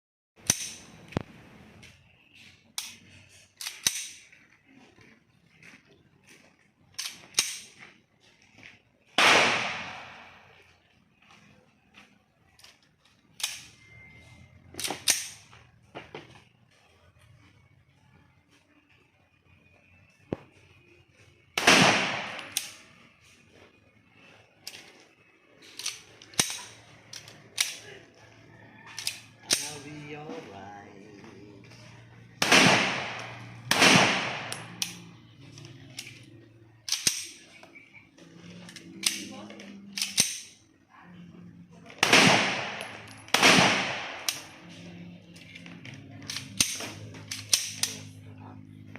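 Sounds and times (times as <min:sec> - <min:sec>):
sharp metallic clicks: 0:00.4 - 0:04.3, 0:06.9 - 0:07.8, 0:12.5 - 0:15.6, 0:21.6 - 0:23.0, 0:24.6 - 0:28.0, 0:28.9 - 0:30.2, 0:32.4 - 0:40.7, 0:42.0 - 0:48.9
pistol shot: 0:09.2 - 0:10.5, 0:21.6 - 0:22.8, 0:32.4 - 0:35.0, 0:42.0 - 0:44.5.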